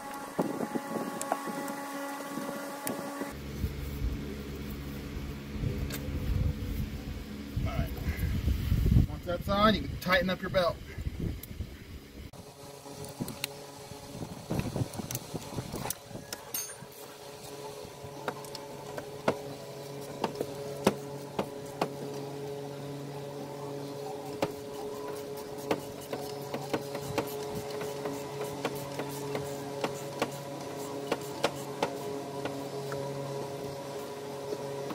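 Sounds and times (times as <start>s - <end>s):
steady hum: 0.0s - 34.9s.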